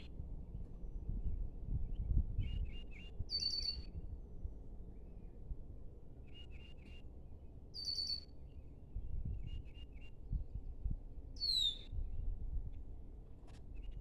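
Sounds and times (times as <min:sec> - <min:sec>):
falling bird whistle: 0:11.4 - 0:11.9.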